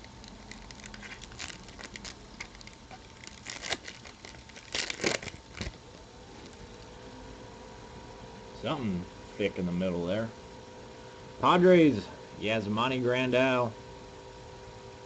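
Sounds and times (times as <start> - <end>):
cards being handled: 0.0 - 5.8
wrapper crinkling and tearing: 0.0 - 5.8.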